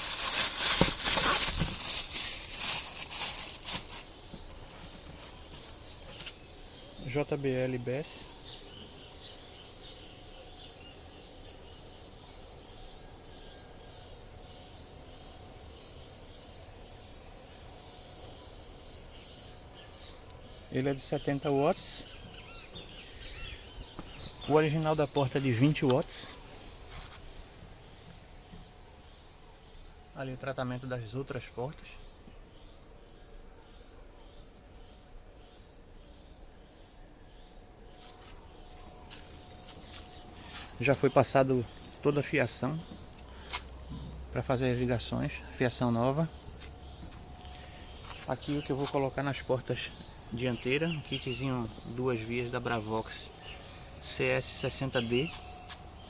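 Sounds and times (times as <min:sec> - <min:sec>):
rhythmic hissy rubbing: 0:00.0 - 0:12.7, 0:36.8 - 0:56.0
insects buzzing in pulses: 0:00.0 - 0:56.0.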